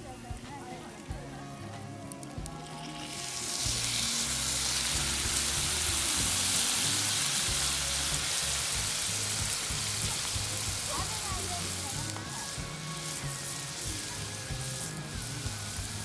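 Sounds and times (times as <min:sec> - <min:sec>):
food sizzling in a hot pan: 0:00.0 - 0:16.0.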